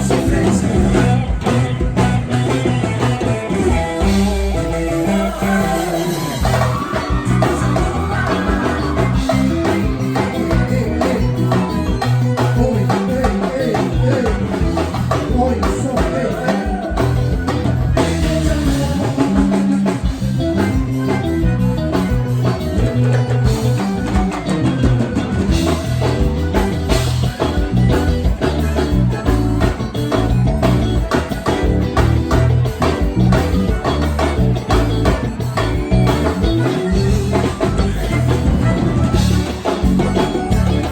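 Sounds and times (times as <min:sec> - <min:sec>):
person singing: 0:00.0 - 0:21.3
drum kit: 0:00.0 - 0:40.9
electric guitar: 0:00.0 - 0:40.9.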